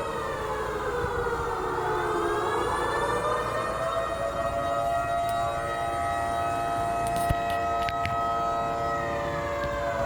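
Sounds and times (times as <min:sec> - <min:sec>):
steady wailing siren: 0:00.0 - 0:10.0.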